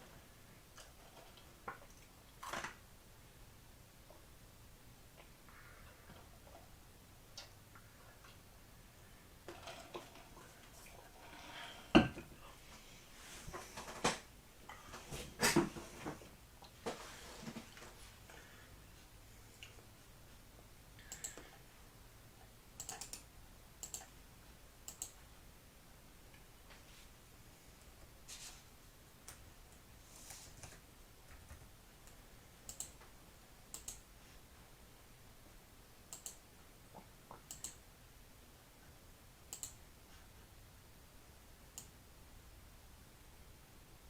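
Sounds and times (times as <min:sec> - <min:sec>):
computer mouse clicks: 0:21.0 - 0:21.6, 0:22.8 - 0:24.2, 0:24.9 - 0:25.2, 0:32.0 - 0:33.1, 0:33.7 - 0:34.1, 0:36.1 - 0:36.4, 0:37.3 - 0:37.8, 0:39.5 - 0:39.8, 0:41.7 - 0:42.0
sharp clicks: 0:22.8 - 0:24.1, 0:33.7 - 0:34.0, 0:36.1 - 0:36.4, 0:39.5 - 0:39.8.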